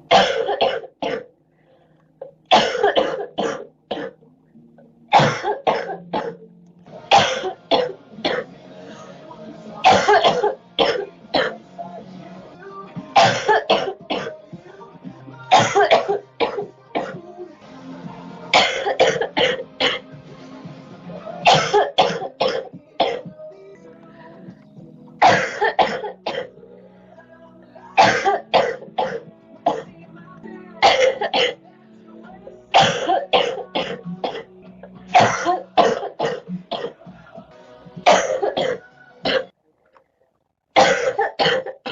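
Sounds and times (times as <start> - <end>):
girl coughing: 0.1 - 1.3, 2.5 - 4.2, 5.1 - 6.4, 9.9 - 11.6, 13.2 - 14.3, 15.5 - 17.2, 18.6 - 20.0, 21.5 - 23.3, 25.2 - 26.5, 28.0 - 29.9, 30.8 - 31.6, 32.8 - 34.5, 35.2 - 36.9, 38.1 - 39.5, 40.8 - 41.9.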